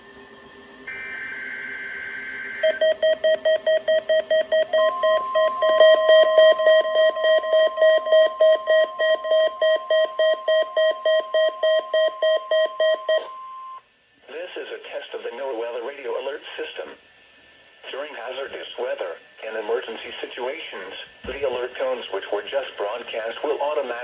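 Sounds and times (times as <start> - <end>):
alarm beeping: 0.9 - 13.8.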